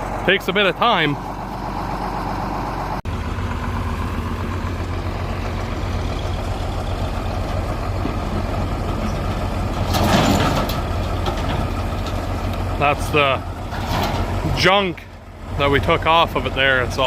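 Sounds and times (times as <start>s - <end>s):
engine idling: 0.0s - 17.0s
noisy clatter: 7.4s - 12.6s, 13.7s - 14.4s.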